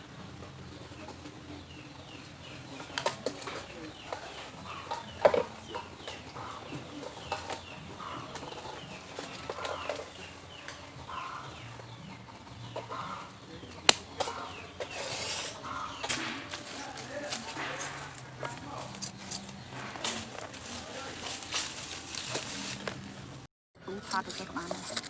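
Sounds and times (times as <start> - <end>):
birds chirping: 0.0 - 25.0
sharp crack: 13.7 - 22.4.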